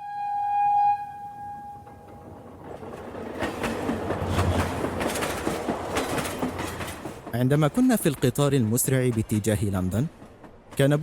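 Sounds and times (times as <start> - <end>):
train whistle: 0.0 - 2.0
train wheels clickety-clack: 1.8 - 11.0.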